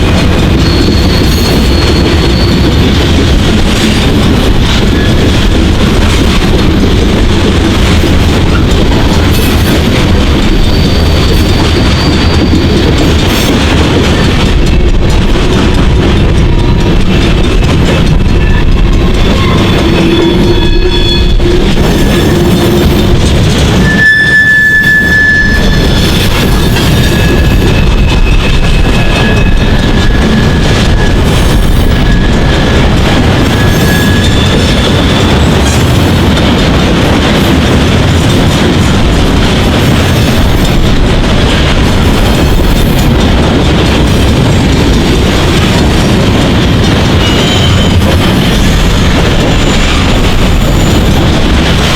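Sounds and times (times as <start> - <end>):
train wheels rumbling on rail: 0.0 - 51.9
high wheel squeal: 0.5 - 2.7, 10.6 - 12.9, 19.2 - 23.2, 23.8 - 30.8, 33.5 - 35.4, 47.2 - 48.1.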